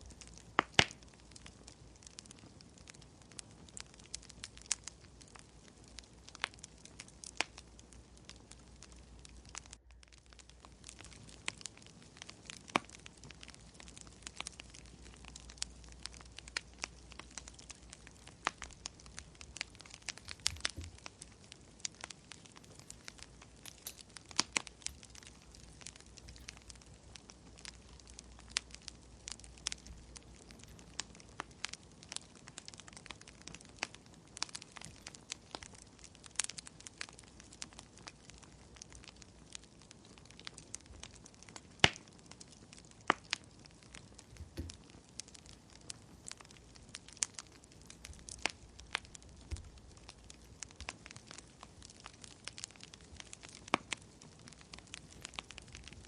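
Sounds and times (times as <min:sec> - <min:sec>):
low steady hum: 0:00.0 - 0:39.5
wood fire crackling and popping: 0:00.0 - 0:56.0.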